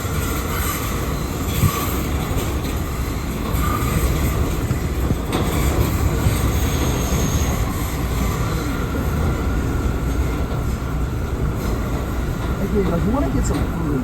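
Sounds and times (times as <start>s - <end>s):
subway wheels rumbling on rail: 0.0s - 14.0s
faint high wheel squeal: 5.4s - 10.6s.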